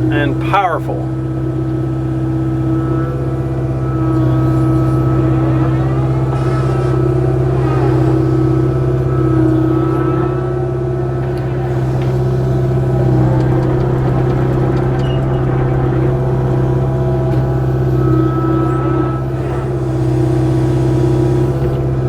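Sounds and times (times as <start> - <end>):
excavator diesel engine running: 0.0 - 22.0.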